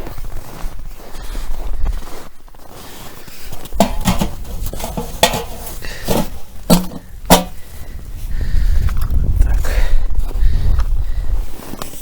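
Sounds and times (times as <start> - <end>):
crunching in snow: 0.0 - 7.9
wind rumble on microphone: 3.6 - 11.8.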